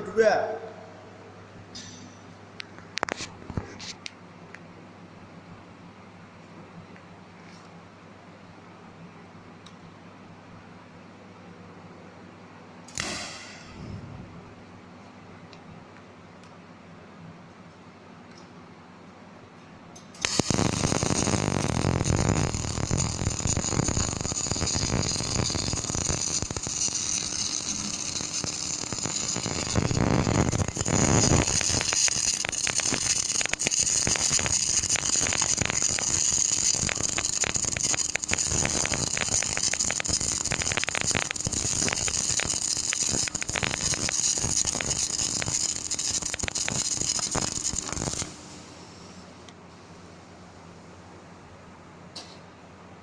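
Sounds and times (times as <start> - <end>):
welding arc crackling and hissing: 12.9 - 14.0, 20.2 - 49.3.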